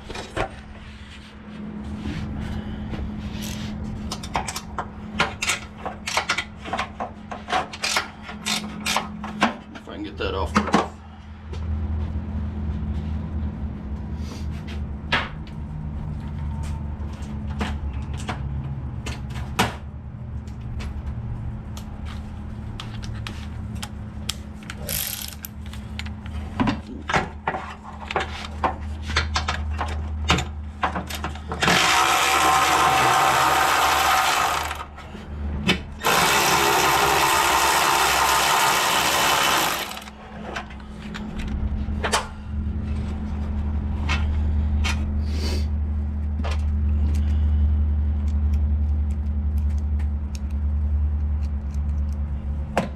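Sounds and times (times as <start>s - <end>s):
low hum: 29.5s - 52.9s
power tool running: 31.6s - 34.9s, 36.0s - 40.2s.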